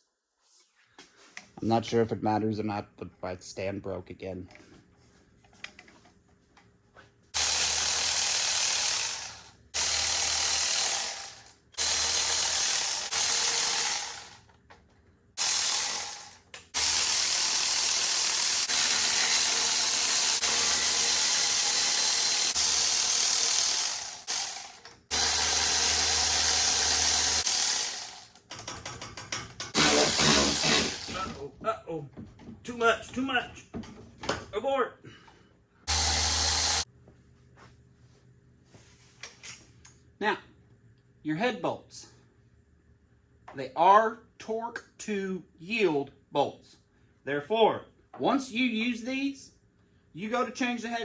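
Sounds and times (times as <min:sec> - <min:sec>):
power ratchet spinning: 0:07.4 - 0:14.4, 0:15.4 - 0:28.5, 0:29.7 - 0:31.4, 0:35.9 - 0:36.9.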